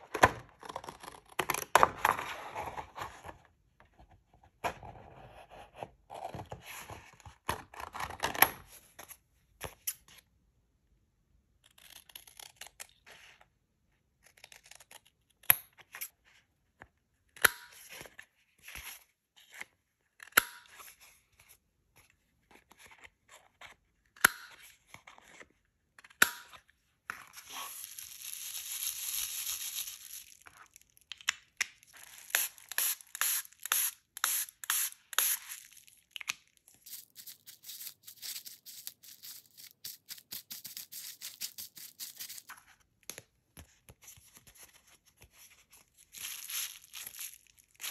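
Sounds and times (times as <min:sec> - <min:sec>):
paper tearing and rustling: 0:36.9 - 0:42.5.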